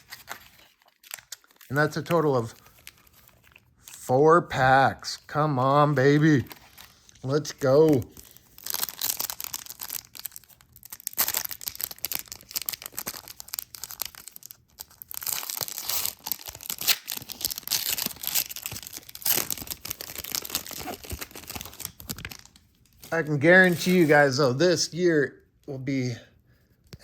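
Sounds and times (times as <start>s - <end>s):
wrappers tearing and crinkling: 0.0s - 4.1s, 6.0s - 24.3s.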